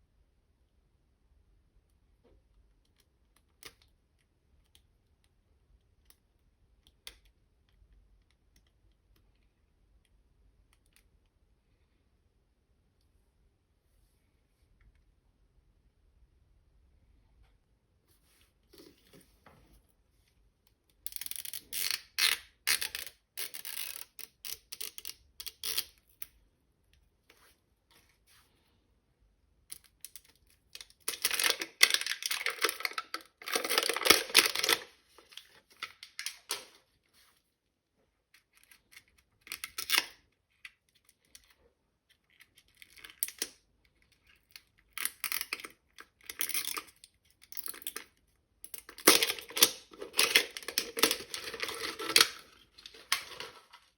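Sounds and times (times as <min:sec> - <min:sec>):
packaging crinkling and tearing: 0:30.7 - 0:36.7, 0:48.8 - 0:53.9.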